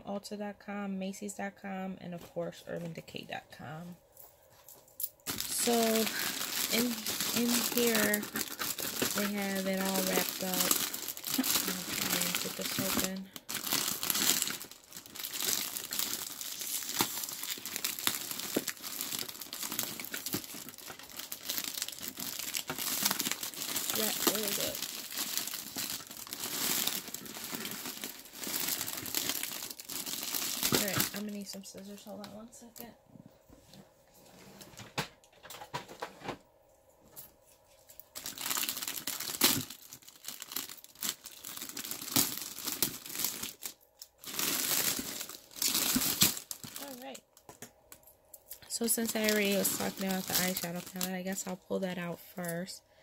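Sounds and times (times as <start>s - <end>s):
packaging wrap crinkling: 4.6s - 32.0s, 37.8s - 51.7s.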